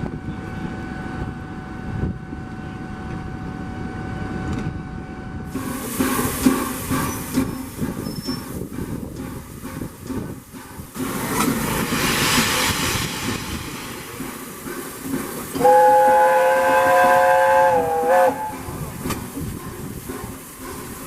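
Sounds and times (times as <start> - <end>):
steam hissing: 5.5 - 21.0
steam locomotive chime whistle: 15.6 - 18.8.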